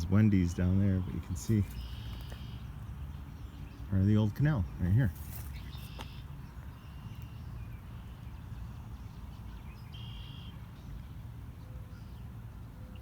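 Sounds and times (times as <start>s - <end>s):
distant traffic: 0.0s - 13.0s
wind: 0.0s - 13.0s
high bird call: 9.8s - 10.6s.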